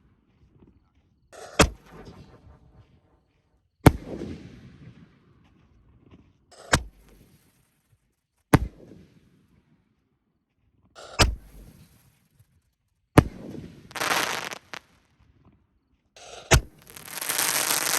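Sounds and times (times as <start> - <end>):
firework bangs: 13.9 - 14.8, 16.6 - 17.9
firework hiss: 13.9 - 14.8, 16.5 - 17.9.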